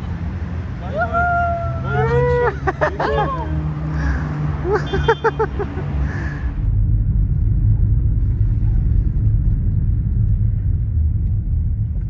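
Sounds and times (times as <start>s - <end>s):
loud low rumble: 5.6s - 12.0s.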